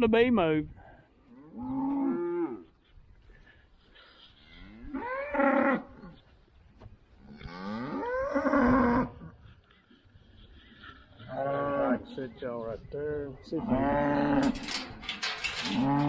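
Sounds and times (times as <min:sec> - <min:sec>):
cows mooing: 0:04.5 - 0:06.2, 0:07.3 - 0:09.4, 0:10.8 - 0:12.3, 0:13.4 - 0:16.0.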